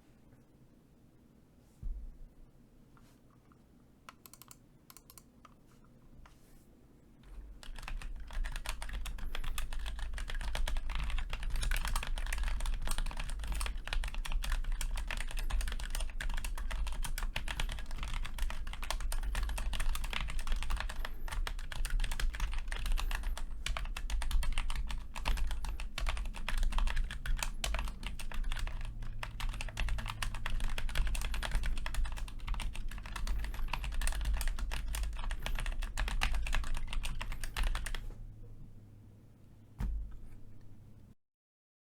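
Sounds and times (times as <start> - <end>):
mechanical keyboard typing: 4.1 - 5.6, 7.2 - 38.1.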